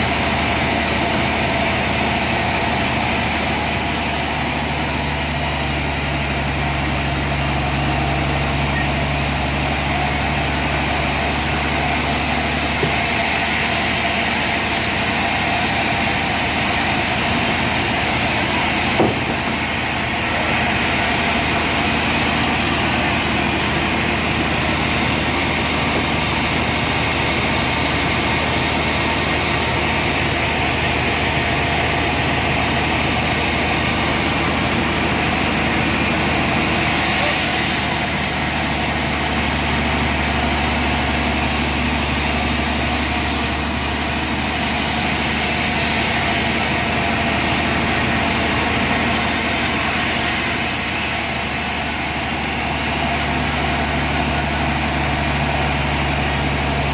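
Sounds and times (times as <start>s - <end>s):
sawmill machinery humming: 0.0s - 56.9s
sharp knock: 12.8s - 13.1s, 19.0s - 19.6s.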